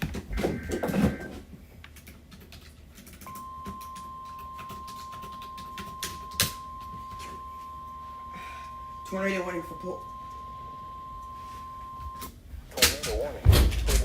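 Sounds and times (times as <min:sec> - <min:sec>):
single-tone warning alarm: 0:00.3 - 0:01.4, 0:03.2 - 0:12.3.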